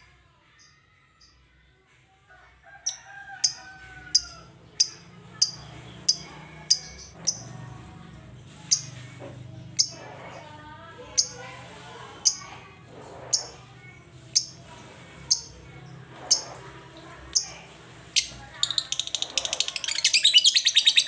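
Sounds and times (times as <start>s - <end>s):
lovebird chirping: 18.2s - 21.0s.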